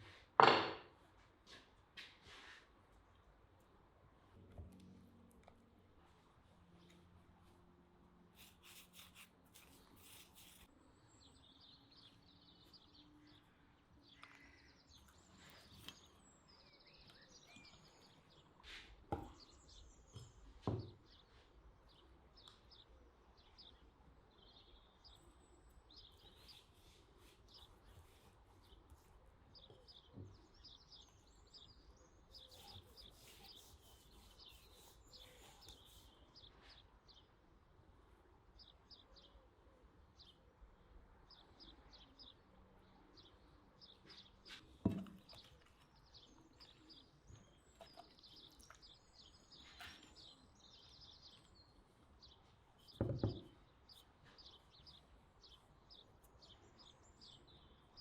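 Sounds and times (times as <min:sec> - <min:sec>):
faint bird chirps: 0:08.4 - 0:37.3, 0:41.2 - 0:58.0.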